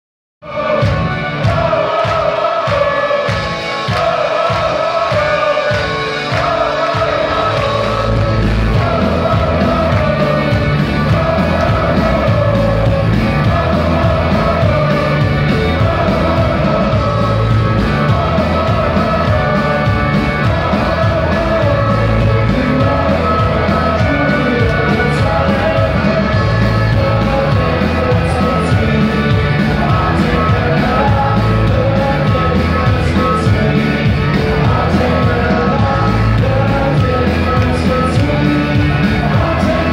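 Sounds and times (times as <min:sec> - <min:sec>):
person singing: 0:00.4 - 0:39.9
live rock band playing: 0:00.5 - 0:39.9.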